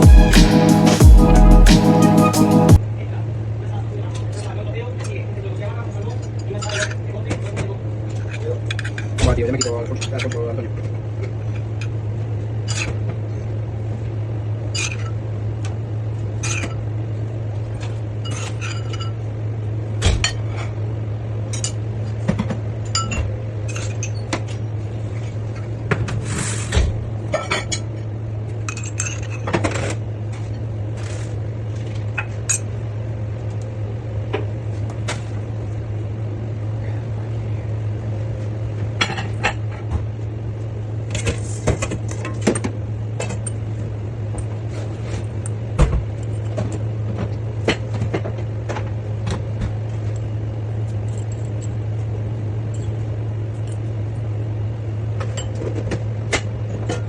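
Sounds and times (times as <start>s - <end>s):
steady low hum: 0.0s - 3.6s.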